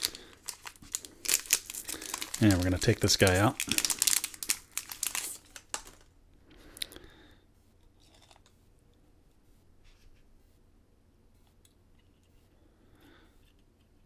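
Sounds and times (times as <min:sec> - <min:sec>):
plastic packaging crackling and tearing: 0:00.0 - 0:06.1.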